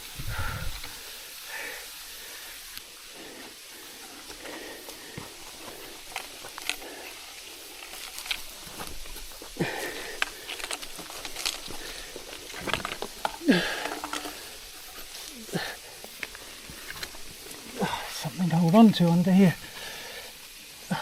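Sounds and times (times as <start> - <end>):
steady hiss: 0.0 - 21.0
scrapes and knocks on rock: 7.9 - 15.2.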